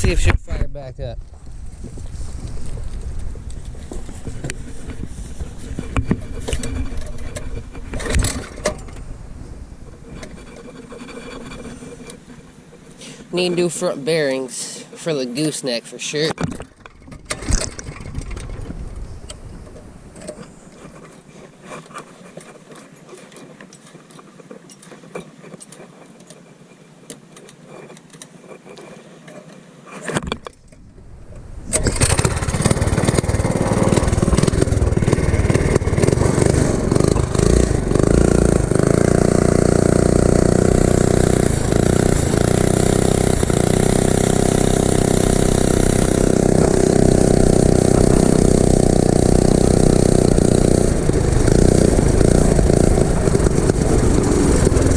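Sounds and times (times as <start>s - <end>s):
mini bike engine running loudly: 31.7s - 54.9s.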